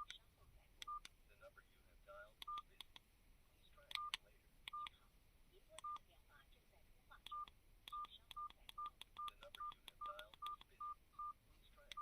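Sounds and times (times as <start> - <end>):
phone keypad beeps with clicks: 0.8 - 1.1, 2.4 - 2.8, 3.9 - 5.0, 5.8 - 6.0, 7.2 - 12.0.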